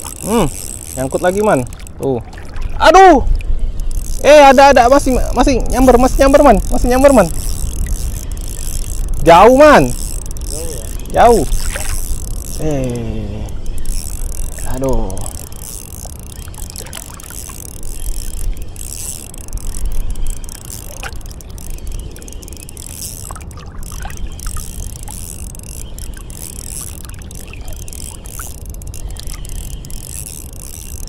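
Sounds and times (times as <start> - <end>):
wind rumbling on microphone: 0.0 - 31.0
water washing and sloshing: 1.4 - 3.4.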